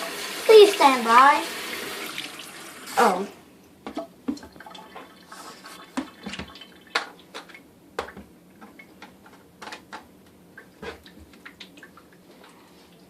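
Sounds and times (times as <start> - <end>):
plastic clicks and knocks: 6.0 - 11.0
water dripping: 10.5 - 13.0.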